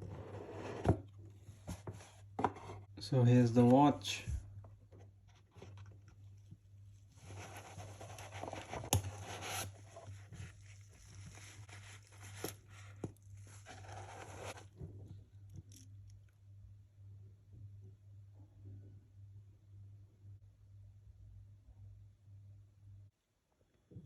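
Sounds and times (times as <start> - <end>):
packaging rustling and scraping: 7.1 - 14.8.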